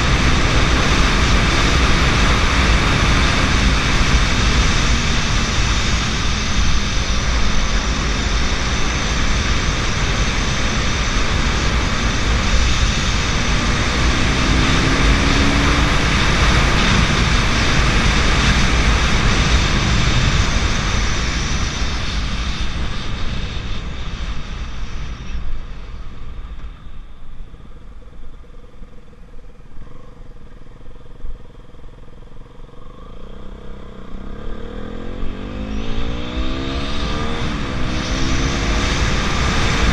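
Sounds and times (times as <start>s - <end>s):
motorcycle engine running: 0.0s - 39.9s
rush of wind: 0.0s - 39.9s
faint steady hum: 25.3s - 34.3s.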